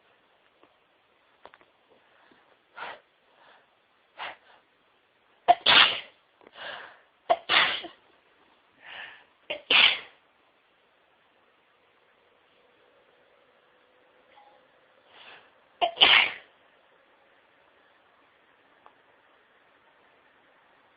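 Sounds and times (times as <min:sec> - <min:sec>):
soft breaths: 0:01.8 - 0:05.0, 0:06.4 - 0:07.2, 0:08.1 - 0:09.5, 0:14.9 - 0:15.8
person sneezing: 0:05.5 - 0:06.2, 0:07.3 - 0:08.0, 0:09.5 - 0:10.2, 0:15.8 - 0:16.5.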